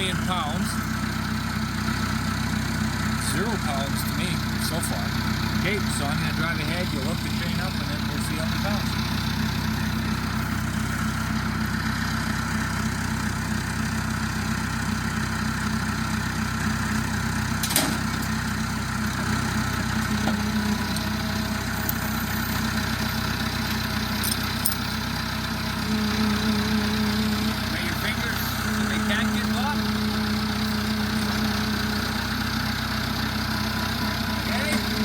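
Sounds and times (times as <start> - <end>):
vehicle engine idling: 0.0 - 35.0.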